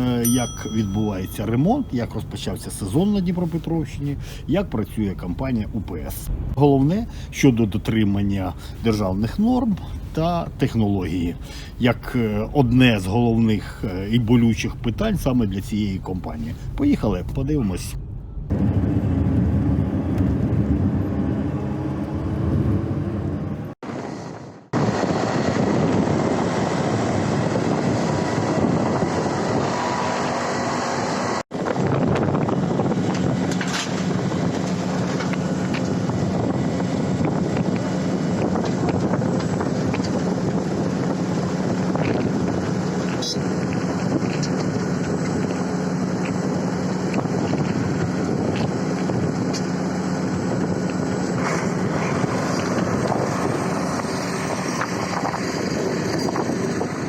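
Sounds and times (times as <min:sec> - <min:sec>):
wind noise: 0:00.0 - 0:57.0
vehicle engine running: 0:16.6 - 0:23.8.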